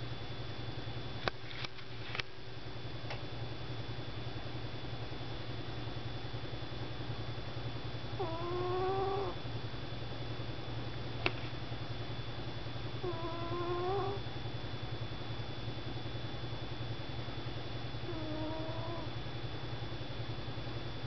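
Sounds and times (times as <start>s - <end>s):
steady low hum: 0.0s - 21.0s
cat snoring: 8.2s - 9.4s, 13.0s - 14.2s, 18.0s - 19.2s.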